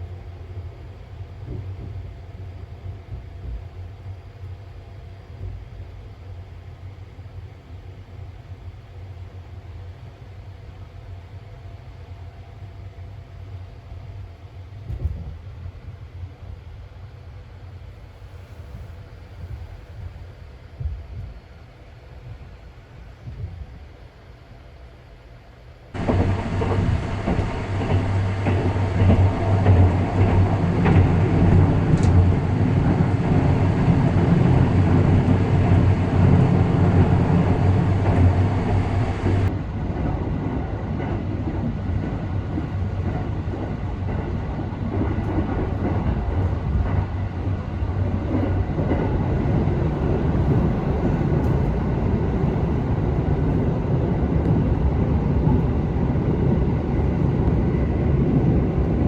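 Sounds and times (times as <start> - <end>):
low hum: 26.0 - 39.5
train wheels rumbling: 26.0 - 59.0.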